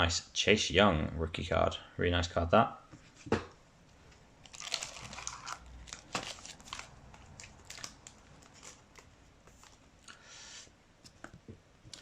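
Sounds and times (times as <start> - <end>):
card pack wrapper crinkling: 4.4 - 9.8.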